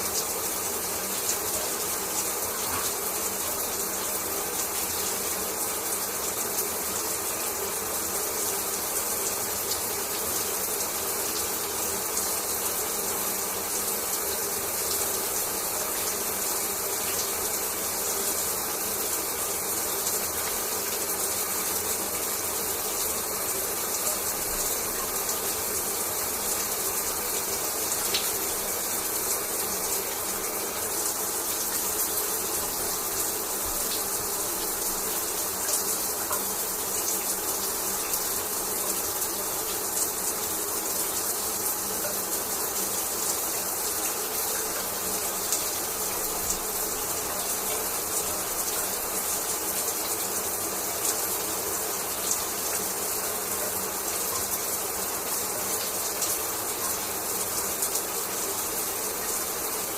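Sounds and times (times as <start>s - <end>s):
shower water spraying: 0.0s - 59.9s.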